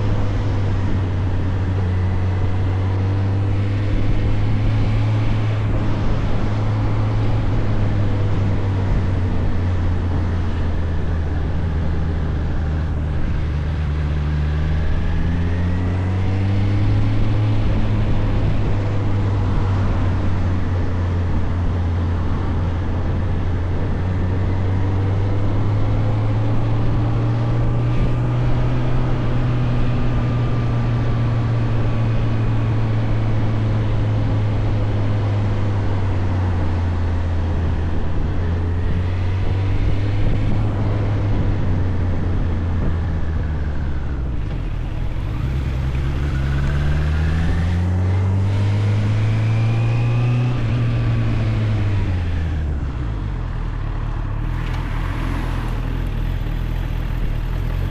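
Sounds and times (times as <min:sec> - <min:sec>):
wind and road noise: 0:00.0 - 0:57.9
motorcycle engine running: 0:41.6 - 0:49.9, 0:50.7 - 0:57.9.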